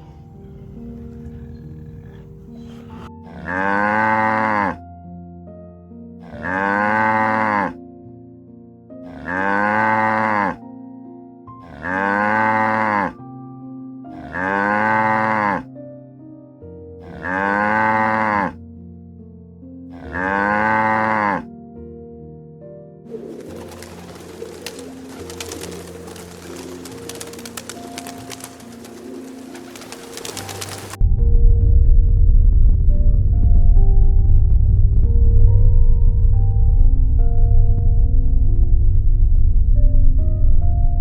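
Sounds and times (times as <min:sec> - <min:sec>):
cow mooing: 0:03.2 - 0:04.8, 0:06.2 - 0:07.8, 0:09.0 - 0:10.6, 0:11.6 - 0:13.2, 0:14.1 - 0:15.7, 0:17.0 - 0:18.6, 0:19.9 - 0:21.5.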